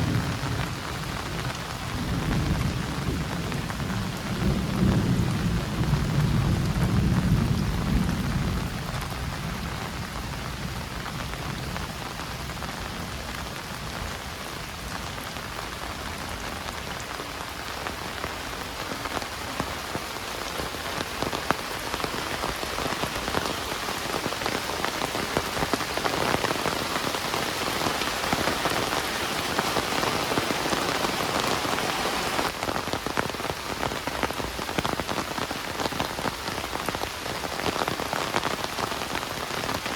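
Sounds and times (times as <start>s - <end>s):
low rumble of thunder: 0.0s - 14.2s
heavy rain falling: 0.0s - 39.9s.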